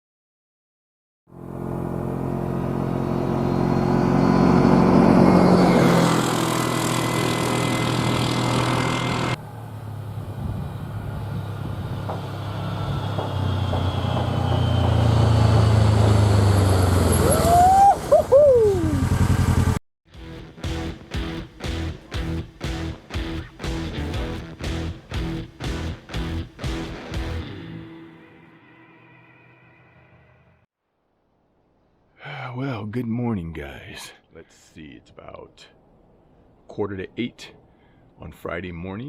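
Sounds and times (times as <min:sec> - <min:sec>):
vehicle engine running: 0:01.3 - 0:17.3, 0:18.7 - 0:19.8.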